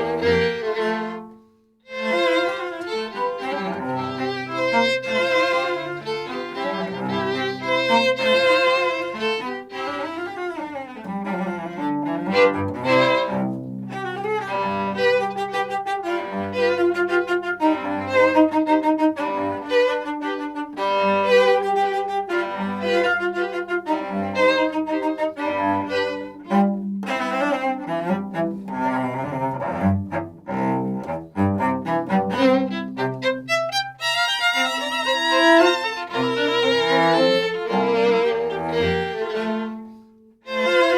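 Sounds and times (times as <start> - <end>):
cello bass notes: 0.0 - 40.9
string trio playing baroque music: 0.0 - 40.9.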